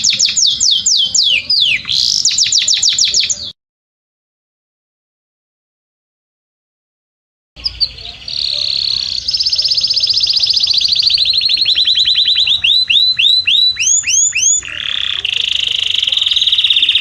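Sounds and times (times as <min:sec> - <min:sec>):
canary singing trills: 0:00.0 - 0:03.6, 0:07.6 - 0:17.0.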